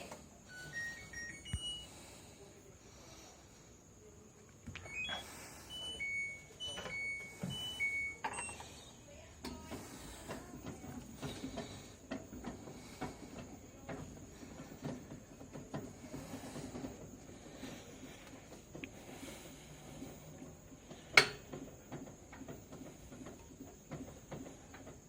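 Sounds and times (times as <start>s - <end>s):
control panel beeps: 0.4s - 1.9s, 4.8s - 8.9s
washing machine clicks and rattles: 9.4s - 25.0s.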